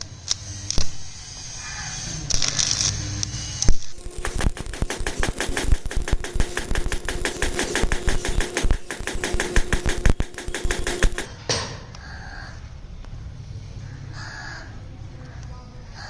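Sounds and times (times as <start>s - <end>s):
rapid mechanical clicks: 3.6s - 11.3s.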